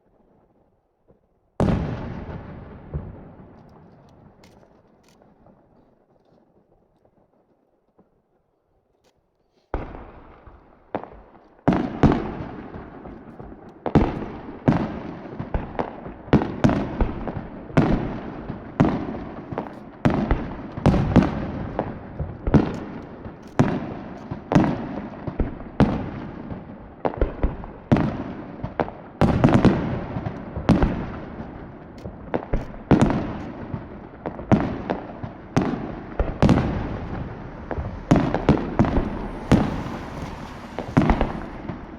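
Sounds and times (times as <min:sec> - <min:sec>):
firework shells bursting: 0:19.5 - 0:24.9, 0:29.2 - 0:41.9.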